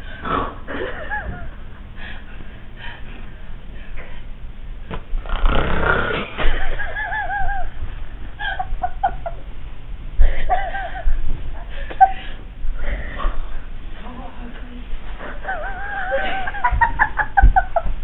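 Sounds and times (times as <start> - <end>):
person snoring: 5.2 - 6.3.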